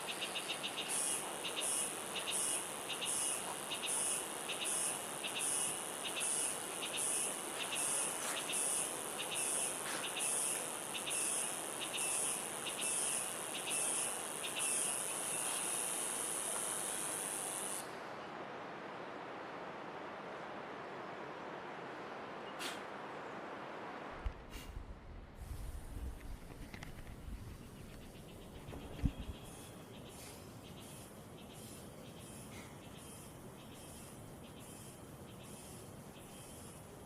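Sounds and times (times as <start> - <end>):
steady hiss: 0.0 - 18.1, 22.3 - 24.8, 25.4 - 37.0
insects buzzing in pulsing chorus: 0.0 - 18.2, 26.5 - 37.0.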